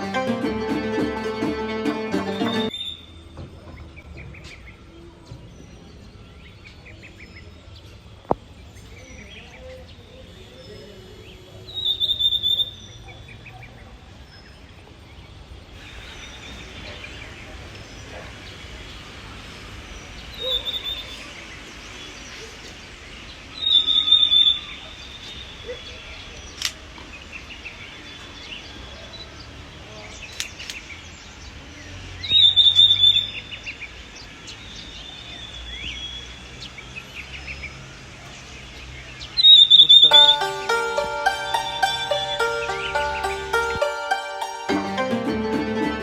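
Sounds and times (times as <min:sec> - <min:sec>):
outdoor background hiss: 0:14.4 - 0:32.5
birds calling and chirping: 0:32.2 - 0:45.1.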